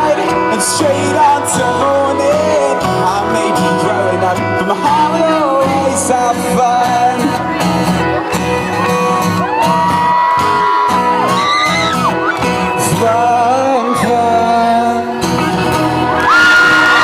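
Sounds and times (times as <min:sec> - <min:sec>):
live pop-rock band: 0:00.0 - 0:17.0
crowd cheering and screaming: 0:08.0 - 0:17.0.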